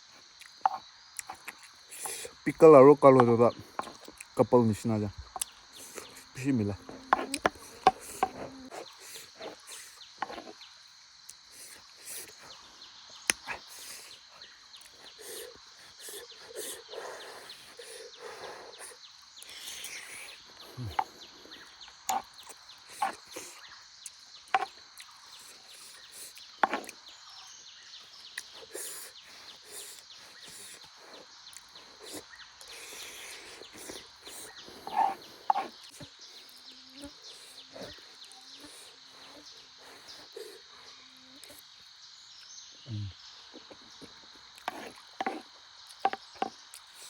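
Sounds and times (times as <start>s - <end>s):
insects chirring: 0.0s - 47.0s.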